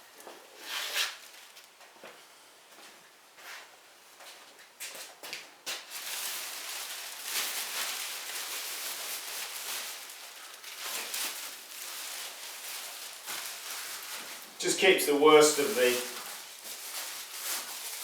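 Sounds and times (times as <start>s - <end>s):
plastic sheeting crinkling: 0.6s - 1.8s, 5.7s - 18.0s.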